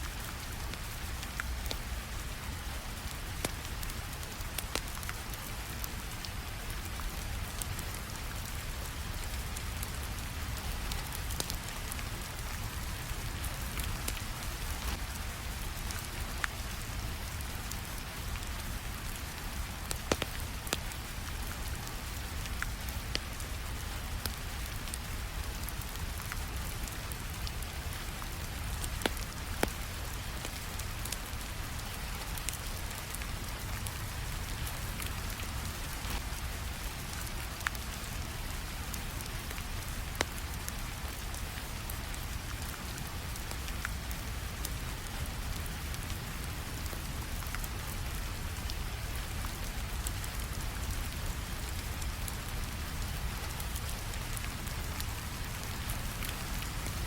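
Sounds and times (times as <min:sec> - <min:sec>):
steady rain: 0:00.0 - 0:57.0
wood fire crackling and popping: 0:00.1 - 0:46.2, 0:50.0 - 0:57.0.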